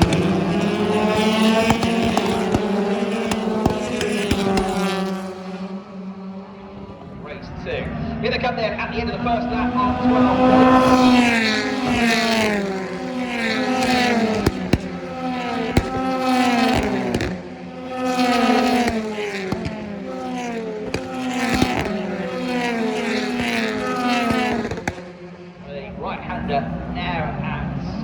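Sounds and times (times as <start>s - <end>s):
sharp cracks: 0.0s - 5.7s, 11.2s - 25.5s
racing car engines: 0.0s - 28.0s.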